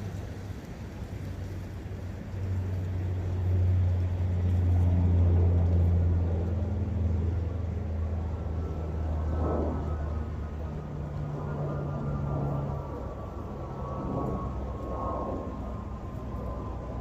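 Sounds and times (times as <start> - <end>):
passing vehicle engine drone: 0.0 - 17.0.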